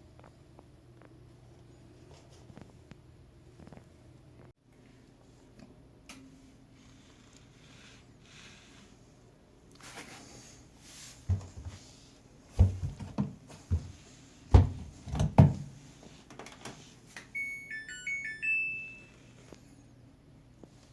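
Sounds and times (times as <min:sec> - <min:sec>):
dull knocks and thumps: 0:11.3 - 0:11.8, 0:12.6 - 0:15.7
washing machine beeping tune: 0:17.3 - 0:19.3.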